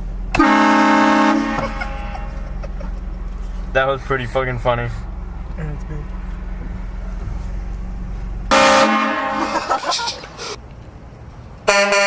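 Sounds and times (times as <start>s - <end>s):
air horn blasting a chord: 0.3s - 2.3s, 8.5s - 9.5s, 11.7s - 12.0s.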